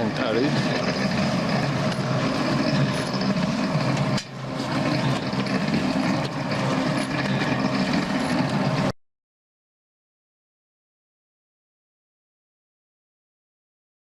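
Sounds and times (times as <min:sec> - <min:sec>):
concrete mixer running: 0:00.0 - 0:09.0.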